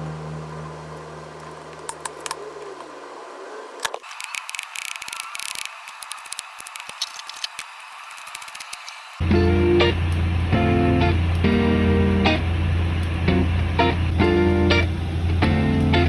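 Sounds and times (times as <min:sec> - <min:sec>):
soft music: 0:00.0 - 0:02.1, 0:09.2 - 0:12.4, 0:13.3 - 0:16.0.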